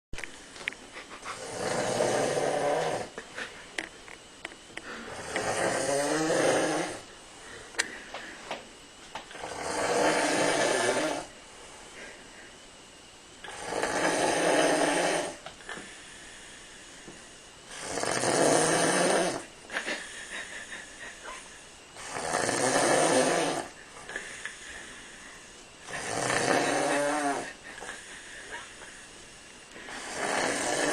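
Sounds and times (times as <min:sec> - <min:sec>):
man snoring: 0:01.4 - 0:03.2, 0:04.8 - 0:07.1, 0:09.3 - 0:11.3, 0:13.4 - 0:15.4, 0:17.7 - 0:19.5, 0:22.0 - 0:24.5, 0:25.8 - 0:28.1, 0:29.8 - 0:30.9.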